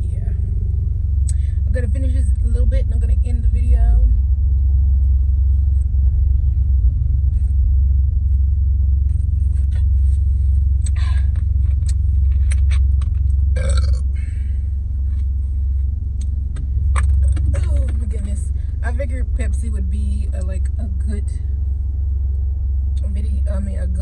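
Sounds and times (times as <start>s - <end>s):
car rumble: 0.0s - 24.0s
woman burping: 13.6s - 14.2s.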